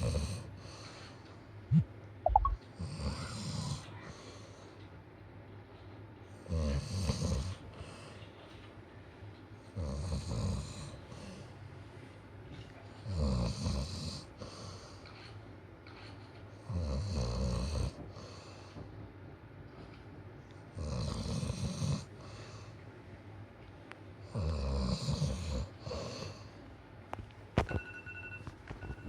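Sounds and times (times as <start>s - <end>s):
quiet breathing: 0.3s - 1.5s, 3.0s - 5.0s, 7.5s - 8.7s, 14.0s - 16.6s, 17.9s - 19.0s, 22.0s - 23.0s.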